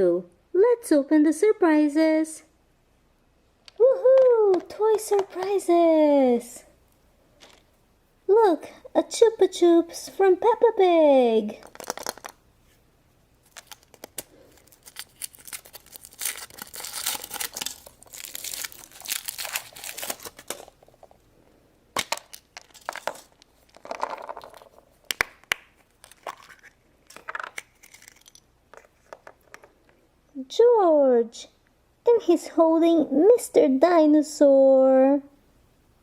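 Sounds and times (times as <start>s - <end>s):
wrapper crinkling and tearing: 11.6s - 12.4s, 13.4s - 21.2s, 22.0s - 29.2s.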